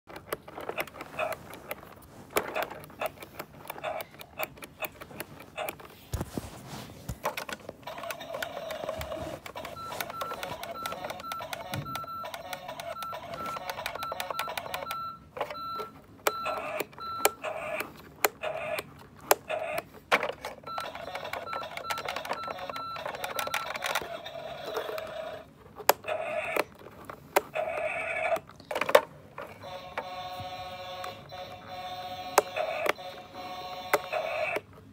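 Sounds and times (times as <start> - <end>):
dashboard warning chime beeping: 9.6 - 17.4, 20.7 - 23.6.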